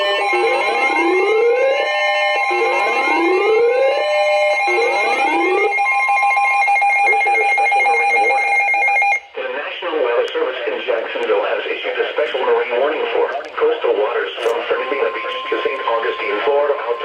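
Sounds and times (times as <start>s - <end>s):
rising siren wails: 0.0s - 7.2s, 14.6s - 17.0s
steady alarm tone: 0.0s - 9.4s, 14.4s - 17.0s.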